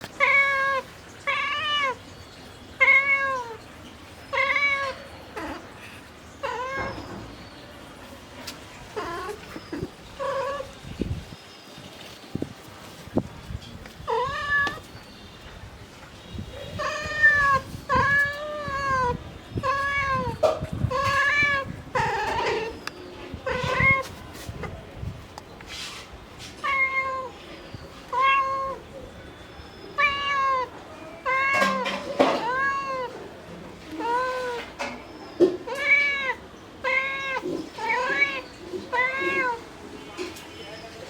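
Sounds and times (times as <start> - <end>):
cat meowing: 0.2 - 2.0, 2.8 - 3.6, 4.3 - 5.6, 6.4 - 7.1, 8.9 - 10.8, 14.0 - 14.8, 16.7 - 22.8, 23.4 - 24.2, 26.6 - 27.4, 28.1 - 28.8, 29.9 - 33.2, 33.9 - 35.0, 35.6 - 39.7.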